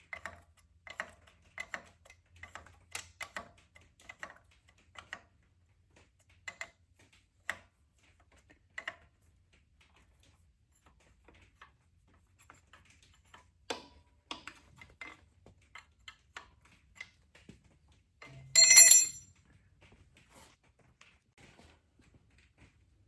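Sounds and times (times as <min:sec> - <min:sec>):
hand tools tapping metal: 0:18.3 - 0:19.2
bright metallic ring: 0:18.6 - 0:19.2.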